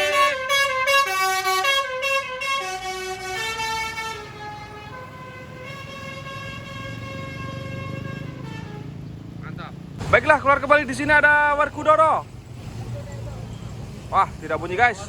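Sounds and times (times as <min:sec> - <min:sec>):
multi-tone bus air horn melody: 0:00.0 - 0:09.0.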